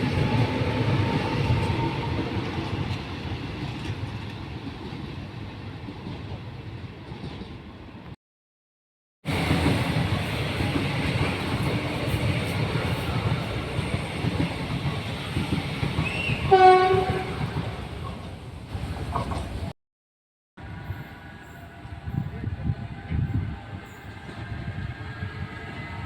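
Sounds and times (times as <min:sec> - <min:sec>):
electric train rumbling past: 0:00.0 - 0:08.1, 0:09.3 - 0:19.7, 0:20.6 - 0:26.0
train horn blast: 0:16.3 - 0:17.9.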